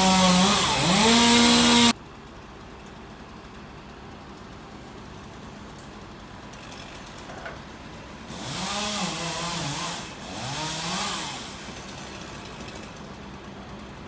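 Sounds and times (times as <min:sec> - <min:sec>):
chainsaw revving: 0:00.0 - 0:02.0, 0:08.3 - 0:13.0.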